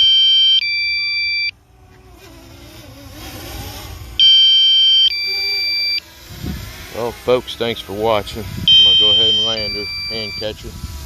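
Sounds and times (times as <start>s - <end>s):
electronic two-tone warning beeps: 0.0s - 1.6s, 4.2s - 6.0s, 8.7s - 10.6s.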